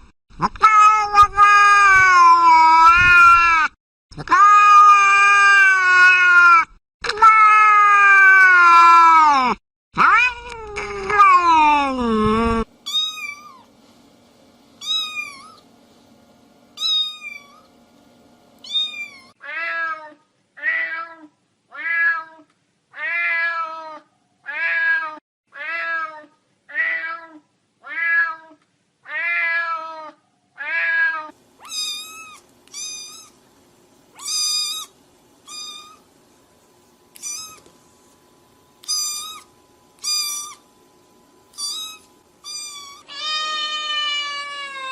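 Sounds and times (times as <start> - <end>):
cats meowing: 18.6 - 20.0, 29.1 - 33.3, 35.5 - 36.0, 37.2 - 37.7, 38.8 - 40.6, 41.5 - 44.9.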